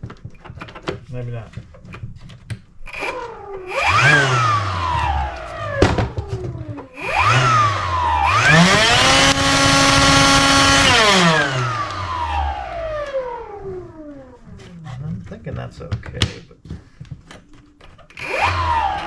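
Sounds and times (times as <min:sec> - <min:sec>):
electric blower motor whining: 0:02.9 - 0:14.8, 0:18.1 - 0:19.0.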